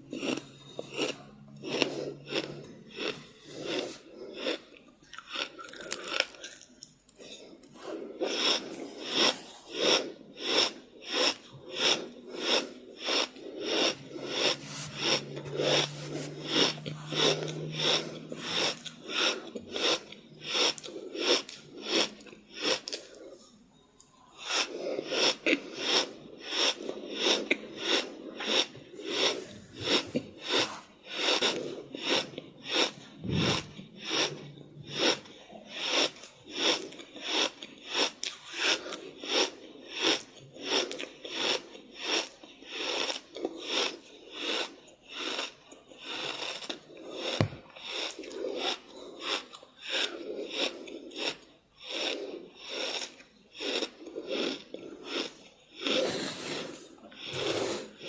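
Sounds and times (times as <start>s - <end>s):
rapid heavy breathing: 7.2s - 23.5s, 24.4s - 37.6s.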